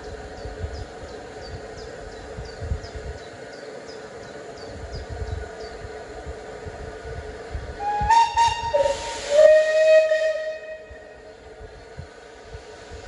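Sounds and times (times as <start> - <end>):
steam hissing: 0.0 - 13.0
steam locomotive whistle: 7.8 - 11.2.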